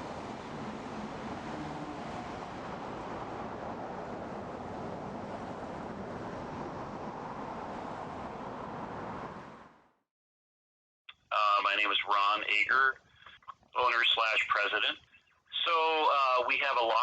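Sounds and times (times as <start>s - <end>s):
steady rushing noise: 0.0s - 9.8s.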